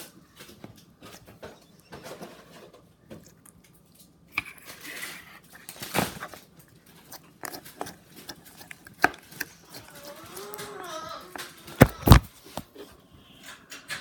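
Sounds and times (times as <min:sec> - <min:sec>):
slime squelching and popping: 0:11.8 - 0:12.3.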